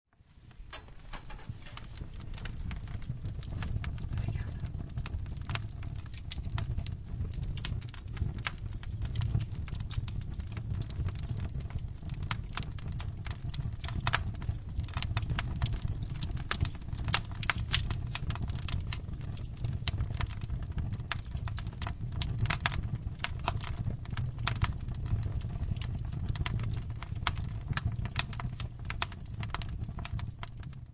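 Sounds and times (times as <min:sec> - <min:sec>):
fire crackling and popping: 0:00.1 - 0:30.9
low rumble of flames: 0:00.2 - 0:30.9.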